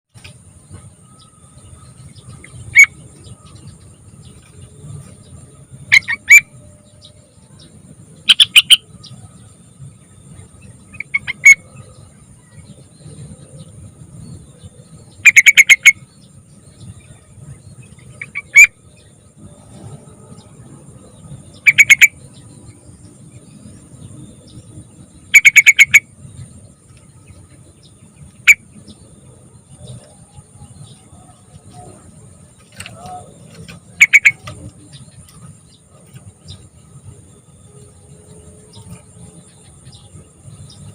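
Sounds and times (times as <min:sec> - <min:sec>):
bulbul calling: 0:00.2 - 0:04.6, 0:05.2 - 0:09.3, 0:10.3 - 0:13.8, 0:14.9 - 0:19.5, 0:21.1 - 0:22.8, 0:23.6 - 0:36.9
faint high whine: 0:00.2 - 0:40.9.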